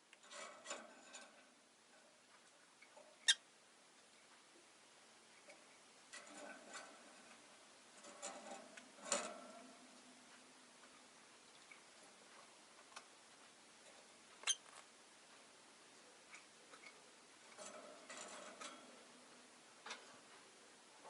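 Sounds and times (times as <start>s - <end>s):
faint clicks and taps: 5.3s - 20.6s
bird pecking in cage: 5.4s - 10.0s, 16.3s - 20.3s.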